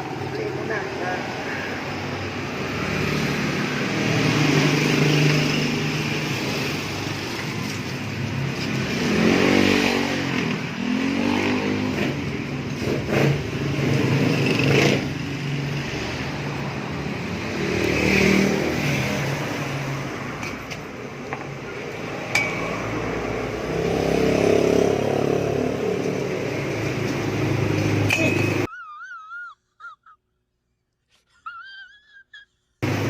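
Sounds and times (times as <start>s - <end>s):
motorcycle engine revving: 2.3s - 28.7s.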